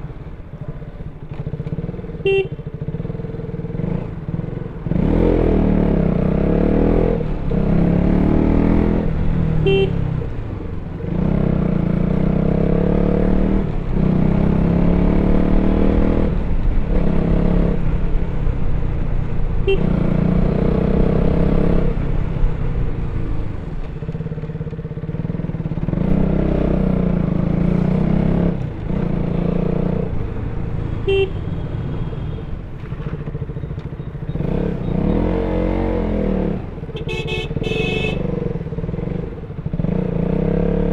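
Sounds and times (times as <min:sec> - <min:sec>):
motorcycle engine revving: 0:00.6 - 0:40.9
horn beeps: 0:09.7 - 0:10.0, 0:31.0 - 0:32.4.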